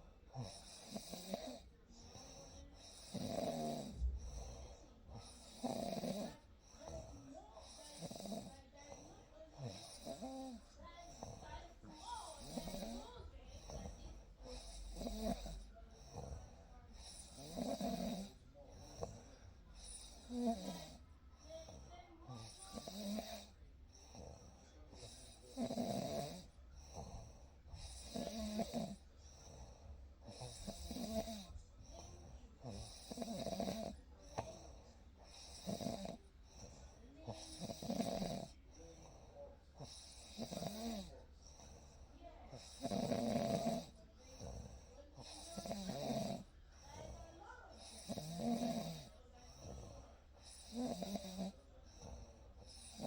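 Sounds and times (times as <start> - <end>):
person snoring: 0.0 - 6.4, 9.6 - 19.2, 19.8 - 21.0, 25.0 - 27.2, 27.8 - 29.0, 30.3 - 31.5, 32.6 - 34.5, 35.3 - 36.2, 37.3 - 38.6, 39.8 - 41.2, 42.6 - 44.6, 47.8 - 49.1, 50.4 - 53.0
quiet breathing: 0.0 - 53.0.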